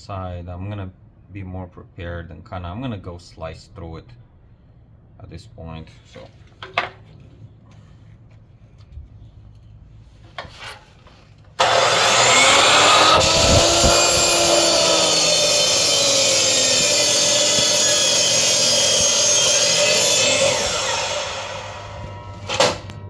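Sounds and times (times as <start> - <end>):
power tool grinding through plastic: 11.6 - 22.9.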